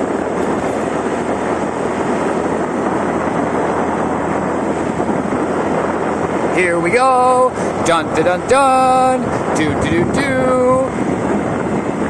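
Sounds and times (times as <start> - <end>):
motor scooter running: 0.0 - 12.0
wind over microphone: 0.0 - 12.0.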